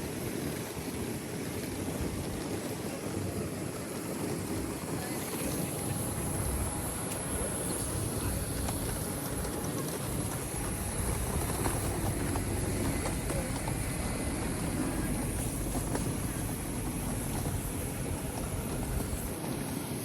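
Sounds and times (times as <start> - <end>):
moving vehicle rumble: 4.2 - 19.7.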